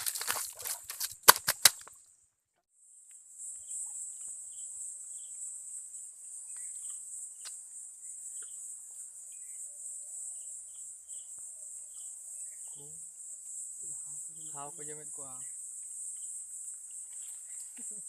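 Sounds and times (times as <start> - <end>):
faint insect chirps: 0.0 - 18.0
high-pitched insect chorus: 0.0 - 18.0.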